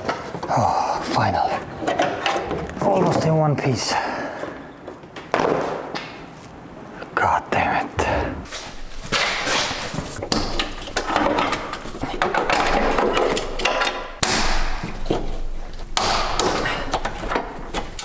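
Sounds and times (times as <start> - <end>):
rustling of wiring: 8.5 - 18.0.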